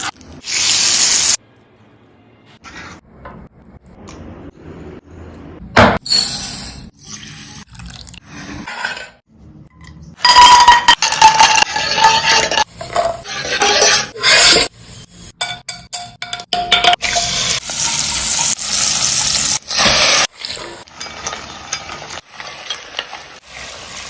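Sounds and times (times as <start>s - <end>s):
pots and utensils clinking: 9.8s - 14.7s, 15.4s - 17.7s, 19.8s - 23.4s.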